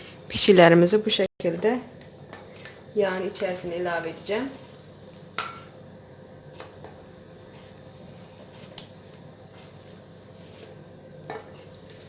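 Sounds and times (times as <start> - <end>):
dough sizzling in hot oil: 1.4 - 12.0.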